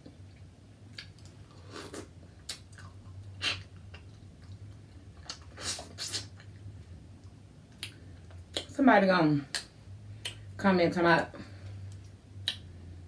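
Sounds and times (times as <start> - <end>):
faint low hum: 0.0 - 13.0
wet chewing and slurping: 1.0 - 6.6.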